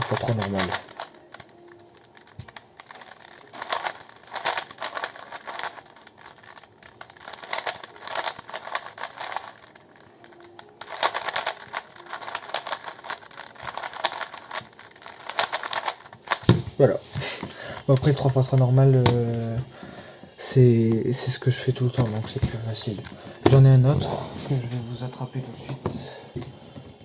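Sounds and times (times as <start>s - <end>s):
puzzle cube plastic clicking: 0.0s - 19.7s, 20.7s - 24.7s.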